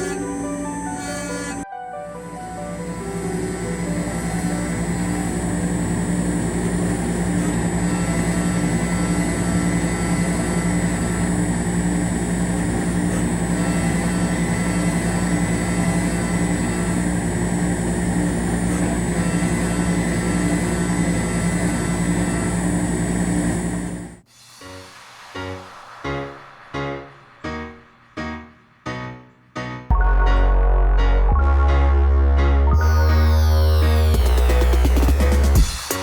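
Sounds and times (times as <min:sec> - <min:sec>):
milling machine motor drone: 0:00.0 - 0:01.6, 0:02.5 - 0:24.3
faint high machining tone: 0:00.0 - 0:01.7, 0:02.8 - 0:24.2.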